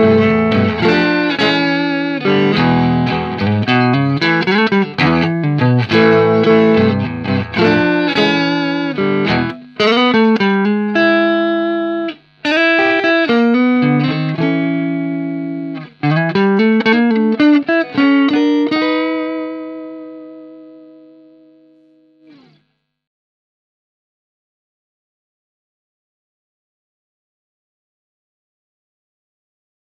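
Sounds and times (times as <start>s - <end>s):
guitar plucked notes and chords: 0.0s - 22.6s.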